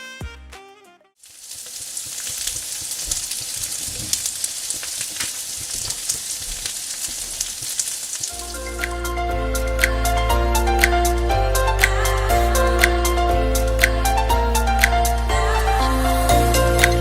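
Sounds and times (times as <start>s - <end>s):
stir-fry sizzling in a pan: 1.2s - 9.2s.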